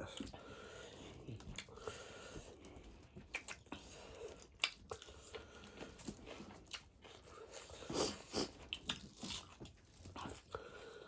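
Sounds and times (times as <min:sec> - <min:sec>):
wet chewing and mouth smacking: 0:02.6 - 0:10.7.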